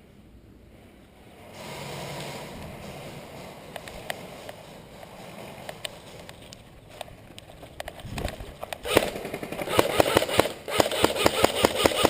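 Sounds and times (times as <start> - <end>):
sharp clicks: 3.7 - 12.0
wind on microphone: 7.8 - 9.0.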